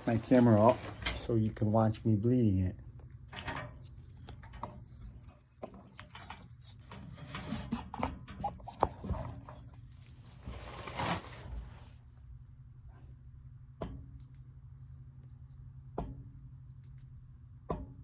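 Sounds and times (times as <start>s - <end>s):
brushing rustle: 0.0s - 1.5s, 9.8s - 12.0s.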